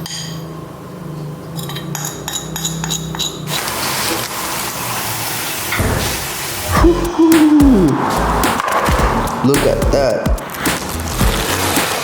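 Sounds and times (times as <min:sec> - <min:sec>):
spoon clinking against glass bowl: 0:01.6 - 0:03.4.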